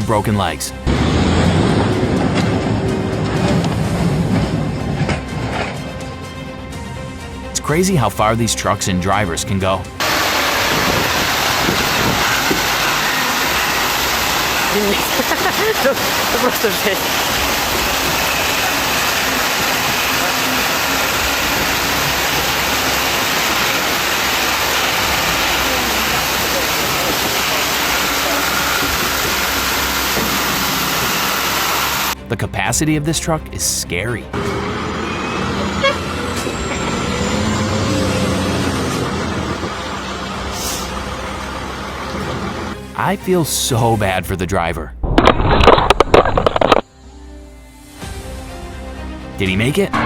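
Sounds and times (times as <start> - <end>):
heavy truck engine running: 0.8 - 32.7, 34.2 - 43.4
loud rushing noise: 0.9 - 5.7, 10.0 - 32.2.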